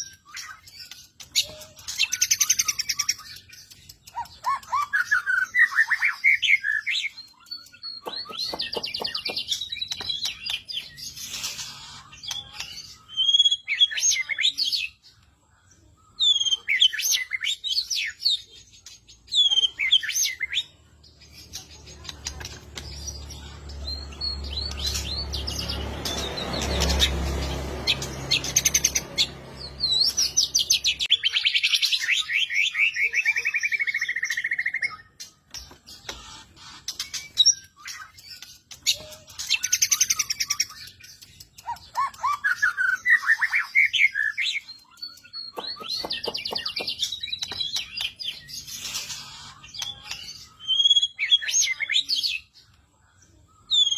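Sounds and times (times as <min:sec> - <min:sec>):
songbird trills and whistles: 0:27.8 - 0:52.6, 0:53.6 - 0:53.9.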